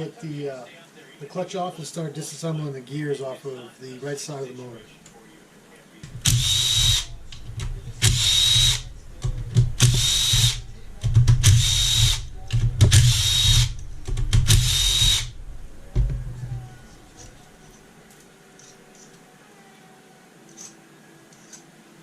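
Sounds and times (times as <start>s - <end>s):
power driver spinning bolts: 6.1s - 15.9s.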